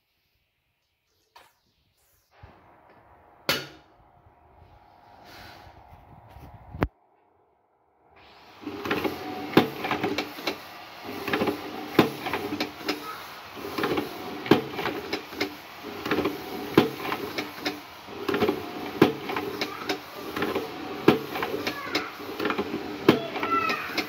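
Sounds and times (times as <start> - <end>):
machine rattling sliding stroke: 8.2 - 24.0.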